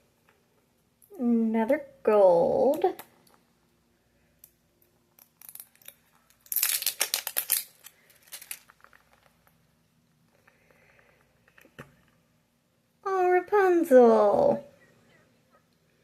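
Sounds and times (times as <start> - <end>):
plastic packaging crinkling: 5.2 - 9.6.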